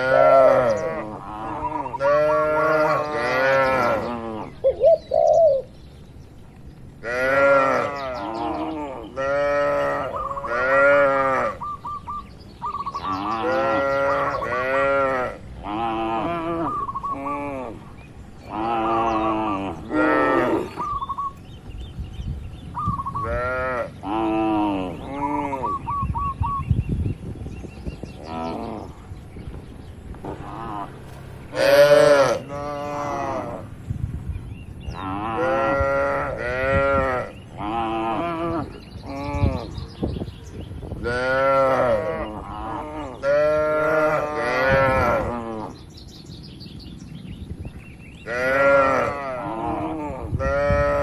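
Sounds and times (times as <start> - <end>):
cattle mooing: 0.0 - 4.5, 7.0 - 11.6, 18.5 - 20.8, 30.3 - 33.7, 41.1 - 45.8, 48.3 - 51.0.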